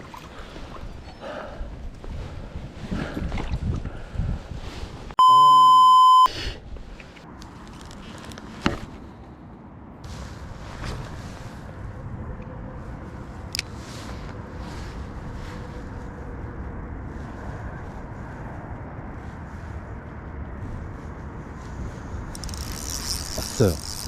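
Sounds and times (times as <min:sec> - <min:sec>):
flowing water: 0:00.0 - 0:01.0
wind on microphone: 0:00.8 - 0:05.1.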